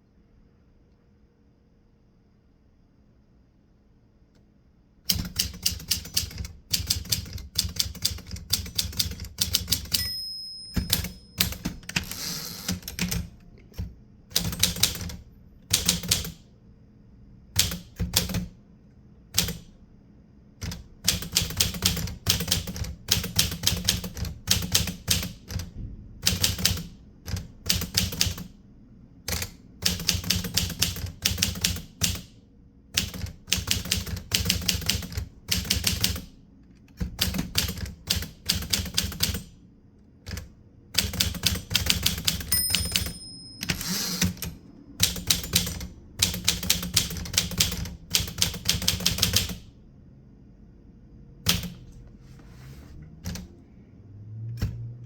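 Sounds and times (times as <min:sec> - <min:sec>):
typewriter keys striking: 0:05.1 - 0:10.1, 0:10.7 - 0:16.4, 0:19.4 - 0:19.7, 0:20.6 - 0:28.5, 0:41.0 - 0:49.6
typewriter carriage return: 0:05.1 - 0:16.4, 0:41.0 - 0:49.6
typewriter bell ringing: 0:09.6 - 0:12.8, 0:42.4 - 0:44.6.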